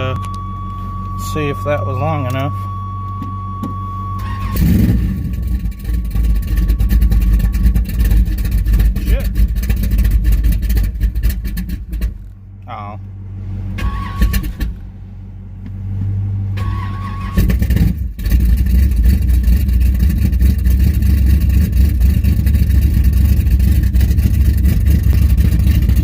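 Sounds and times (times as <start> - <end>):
engine cranking on starter: 4.2 - 12.3, 13.7 - 14.8, 16.6 - 26.0
engine loud choppy idle: 4.2 - 12.4, 17.3 - 26.0.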